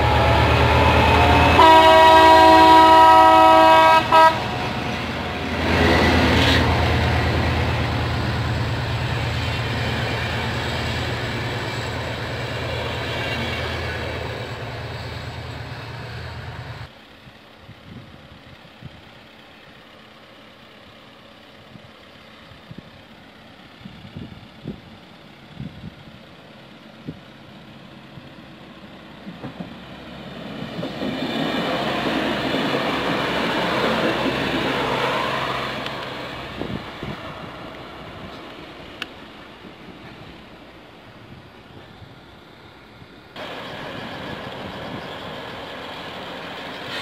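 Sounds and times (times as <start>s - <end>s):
locomotive horn: 0.0s - 4.8s
train wheels rumbling: 0.0s - 16.9s, 17.9s - 47.0s
train engine hum: 0.0s - 47.0s.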